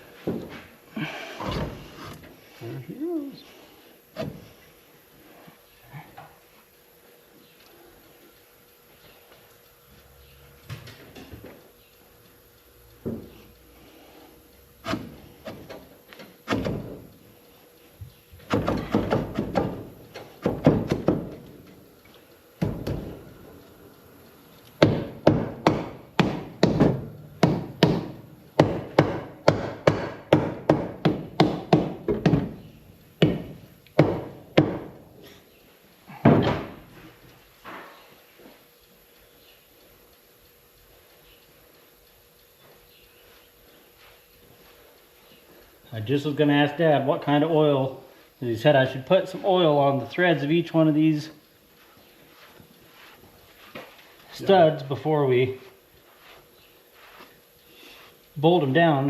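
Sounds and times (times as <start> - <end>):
sharp knocks and clunks: 18.4 - 21.4, 22.6 - 23.2, 24.8 - 32.6, 33.2 - 35.0, 36.2 - 36.8.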